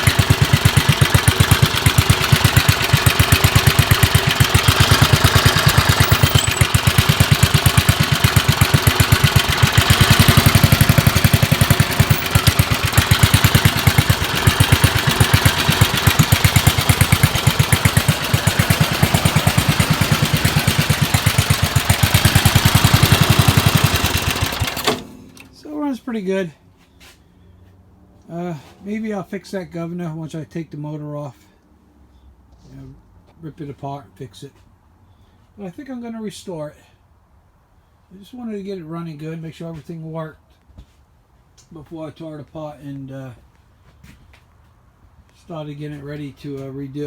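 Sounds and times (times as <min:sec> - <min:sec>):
riding mower engine running: 0:00.0 - 0:25.8.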